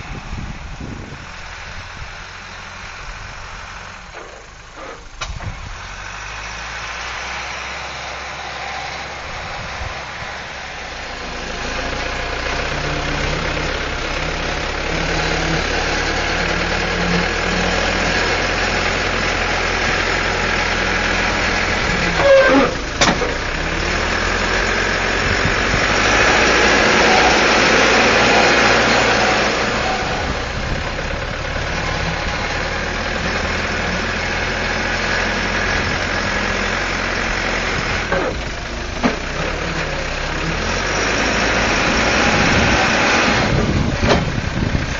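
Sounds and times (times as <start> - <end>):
diesel engine running: 0.0 - 44.9.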